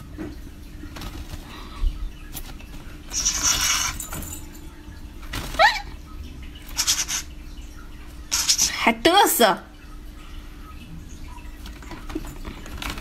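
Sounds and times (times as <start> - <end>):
budgerigar hissing squawks: 3.1 - 4.0, 6.7 - 7.3, 8.3 - 8.8.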